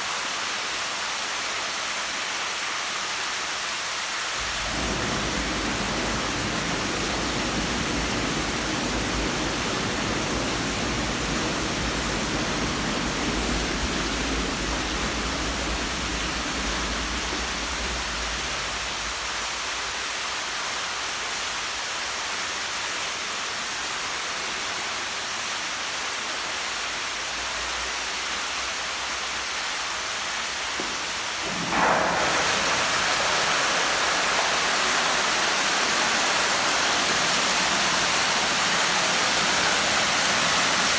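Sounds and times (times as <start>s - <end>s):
pool water splashing: 4.4s - 20.2s, 30.4s - 40.9s.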